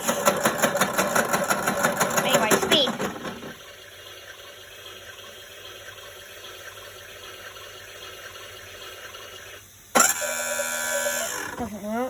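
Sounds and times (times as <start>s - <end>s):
electronic water hiss: 2.8s - 12.0s.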